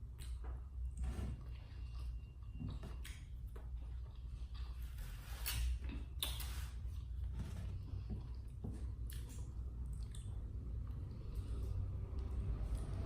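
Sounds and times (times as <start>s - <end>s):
steady low hum: 0.0s - 13.0s
wet chewing clicks and smacks: 8.2s - 11.1s.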